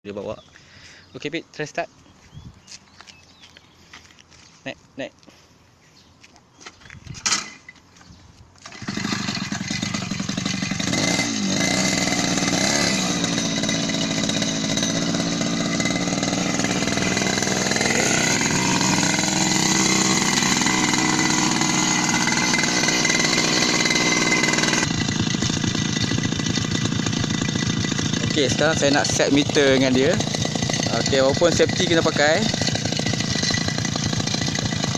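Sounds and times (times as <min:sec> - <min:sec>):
two-stroke engine revving: 0:08.6 - 0:34.9.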